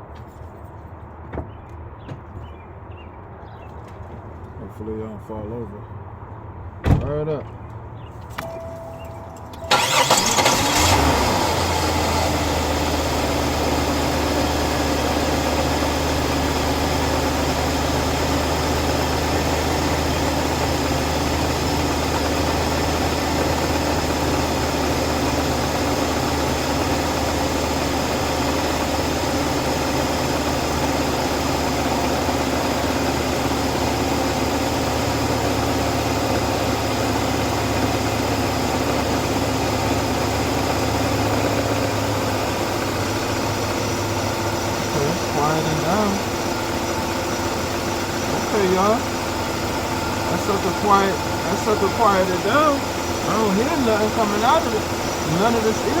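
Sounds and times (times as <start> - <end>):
car engine starting and idling: 8.2 - 56.0.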